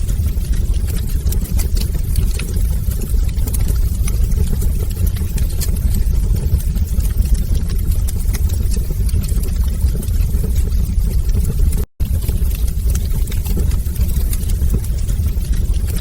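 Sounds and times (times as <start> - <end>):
fire crackles and pops: 0.0 - 16.0
fire flames rumbling: 0.0 - 16.0.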